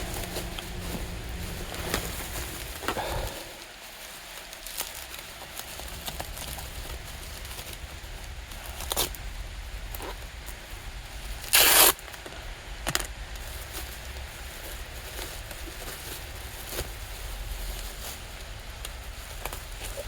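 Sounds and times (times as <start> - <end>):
packaging knocks and rustles: 0.0 - 9.2
packaging tearing rip: 11.4 - 12.0.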